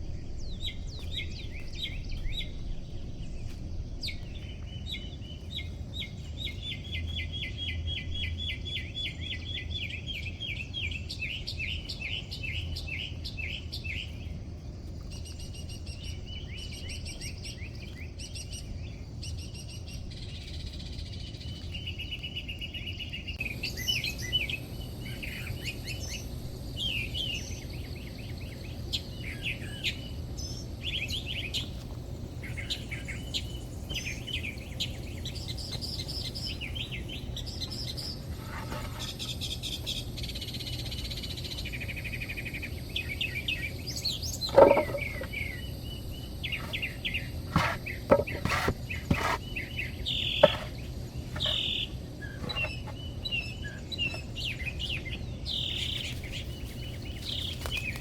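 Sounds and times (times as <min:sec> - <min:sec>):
low steady rumble: 0:00.0 - 0:09.9
small birds chirping and trilling: 0:00.0 - 0:58.0.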